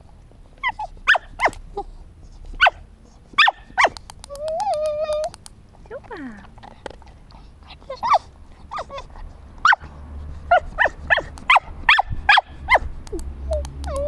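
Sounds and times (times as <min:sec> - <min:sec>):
dog whining in high yelps: 0:00.6 - 0:01.9, 0:02.6 - 0:02.8, 0:03.4 - 0:05.4, 0:07.7 - 0:09.9, 0:10.5 - 0:14.0.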